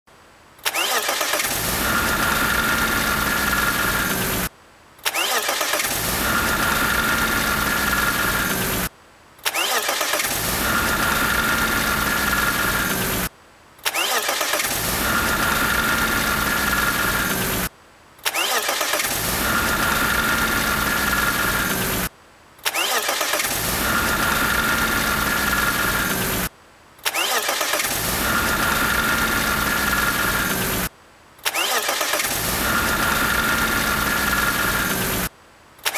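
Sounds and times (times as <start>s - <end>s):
car engine running with rattle: 1.1s - 4.5s, 5.6s - 8.9s, 10.0s - 13.3s, 14.4s - 17.7s, 18.8s - 22.1s, 23.2s - 26.5s, 27.6s - 30.9s, 31.5s - 35.9s.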